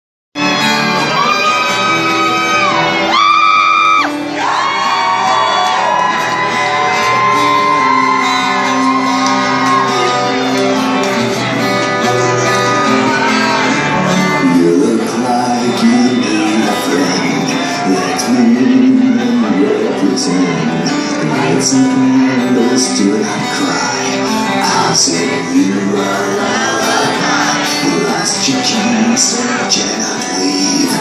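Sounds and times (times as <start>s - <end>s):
song with long held notes: 0.4s - 31.0s
steady musical accompaniment: 0.4s - 31.0s.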